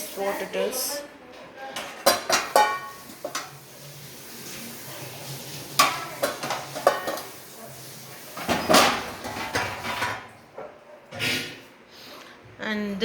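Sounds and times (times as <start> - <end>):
metal dishes clattering: 1.7 - 3.7, 5.6 - 7.5, 8.3 - 10.8.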